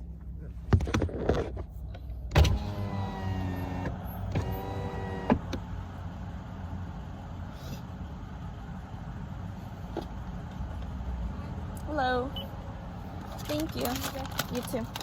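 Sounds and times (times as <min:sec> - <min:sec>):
car engine idling: 0:01.7 - 0:15.0
power window motor whine: 0:02.4 - 0:05.7.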